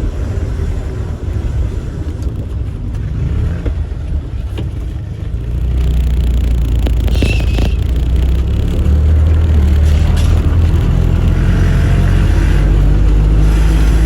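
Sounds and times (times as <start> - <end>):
car engine running: 1.1 - 14.0
short high squeal: 7.0 - 8.3.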